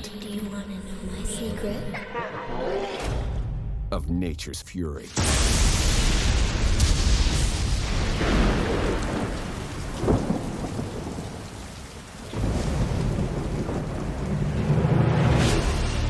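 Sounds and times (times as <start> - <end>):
sharp thunder crack: 5.1 - 15.0
heavy rain: 5.2 - 16.0
low thunder rumble: 5.5 - 15.0.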